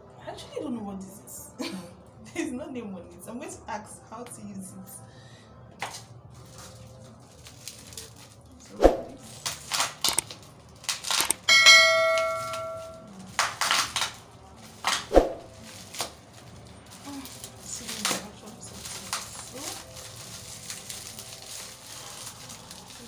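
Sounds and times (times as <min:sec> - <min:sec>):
packaging rustling: 0:06.4 - 0:08.6, 0:09.2 - 0:11.5, 0:12.3 - 0:23.0
bright ringing chime: 0:11.5 - 0:13.0.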